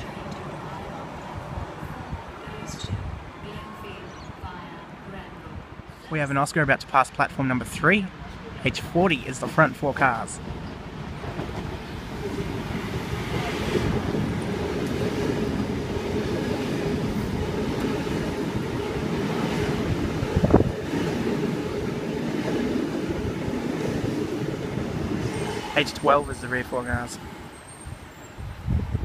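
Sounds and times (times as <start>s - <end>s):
train wheels rumbling on rail: 9.4s - 29.0s.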